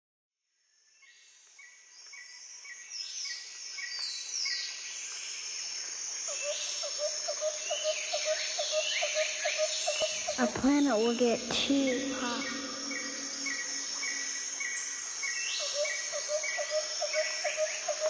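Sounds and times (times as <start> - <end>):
high insect drone: 1.6 - 18.0
birds calling: 6.4 - 18.0
low repeating chirping call: 7.7 - 18.0.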